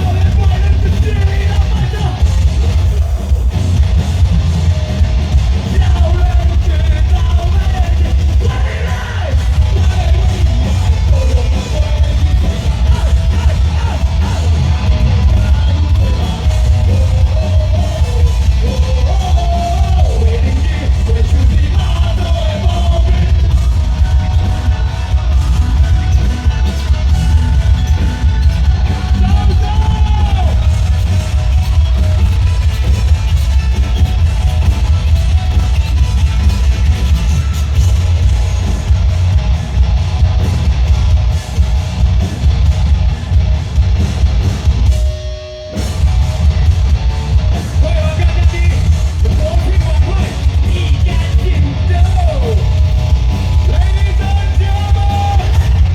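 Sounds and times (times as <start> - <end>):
heavy drums: 0.0 - 55.9
metal band playing live: 0.0 - 55.9.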